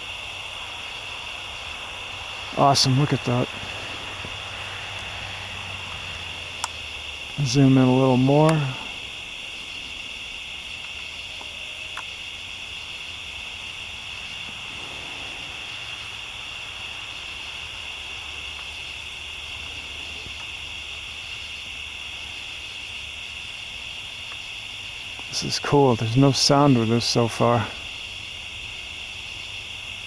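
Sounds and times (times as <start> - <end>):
faint low rumble: 0.0 - 21.2
night insects chorus: 0.0 - 30.0.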